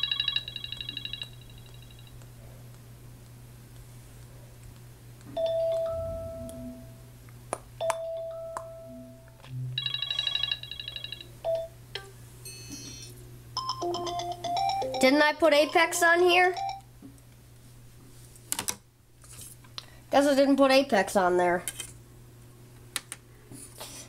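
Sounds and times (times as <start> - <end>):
phone ringtone chimes: 0.0 - 2.1, 5.4 - 6.9, 9.8 - 11.7, 12.5 - 15.9, 16.6 - 16.8.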